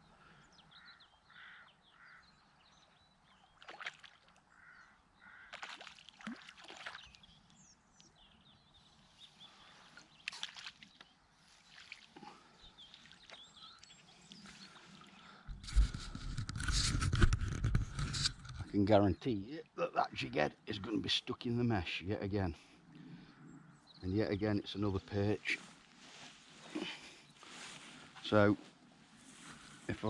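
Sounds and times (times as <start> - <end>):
birds calling: 0.0 - 30.0
river water splashing: 3.4 - 4.6, 5.4 - 7.3, 9.6 - 15.5.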